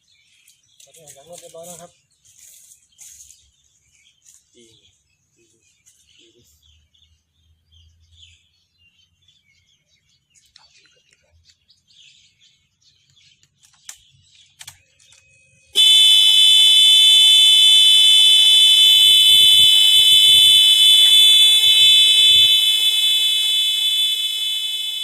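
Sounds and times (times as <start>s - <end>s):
high-pitched alarm buzzer: 15.8s - 25.0s.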